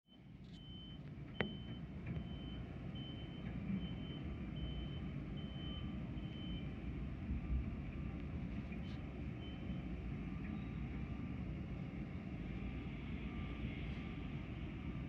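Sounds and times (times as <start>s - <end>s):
reversing alarm beeping: 0.1s - 6.8s, 9.4s - 10.0s.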